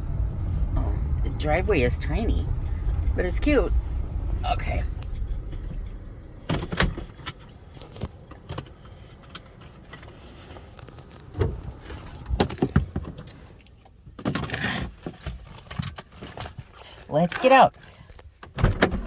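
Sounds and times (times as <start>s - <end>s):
clicks and knocks inside car: 5.0s - 19.0s.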